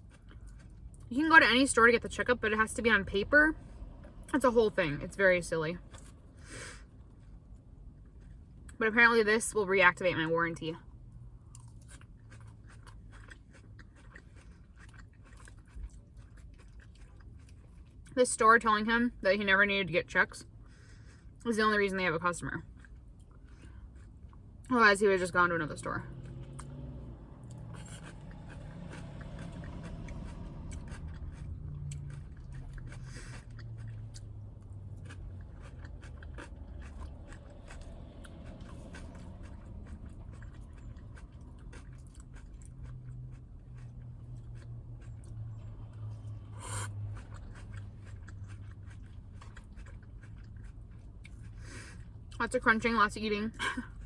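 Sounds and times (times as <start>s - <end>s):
person chewing crunchy salad: 0.0s - 1.1s, 5.8s - 8.8s, 11.1s - 18.2s, 22.6s - 25.5s, 26.1s - 52.4s.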